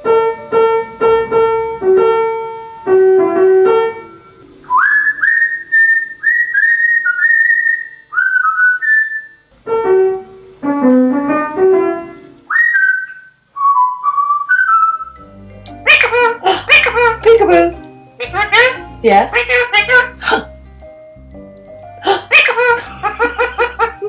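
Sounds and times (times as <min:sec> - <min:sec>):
parrot whistling: 0:04.6 - 0:09.5, 0:12.5 - 0:17.6, 0:18.2 - 0:20.5, 0:22.0 - 0:23.9
keyboard playing short phrases: 0:15.7 - 0:20.6.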